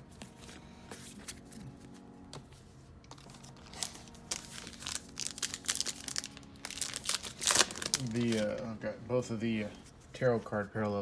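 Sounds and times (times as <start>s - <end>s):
foil wrapper crinkling: 3.2s - 8.8s.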